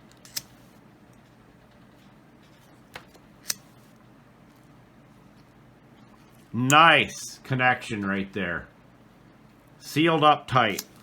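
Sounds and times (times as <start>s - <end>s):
faint room hiss: 0.0s - 11.0s.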